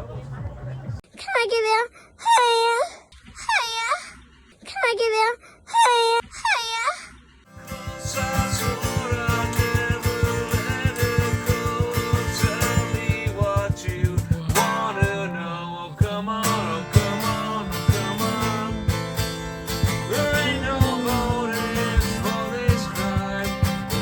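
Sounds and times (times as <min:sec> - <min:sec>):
guitar-led song: 0:07.5 - 0:24.0.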